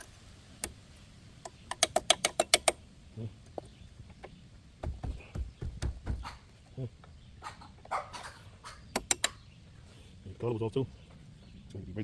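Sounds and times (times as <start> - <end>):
sharp metallic clicks: 1.4 - 2.8, 8.9 - 9.4
dull knocks: 4.8 - 6.4.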